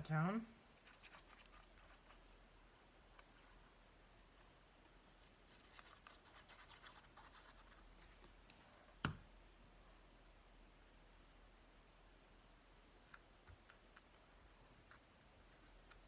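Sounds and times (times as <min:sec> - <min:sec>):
paper scratching and rustling: 0:05.2 - 0:08.3.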